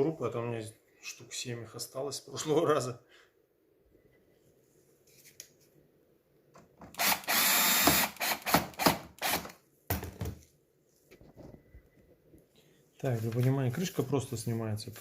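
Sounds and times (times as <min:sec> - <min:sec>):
electric screwdriver driving screw: 0:06.9 - 0:09.6.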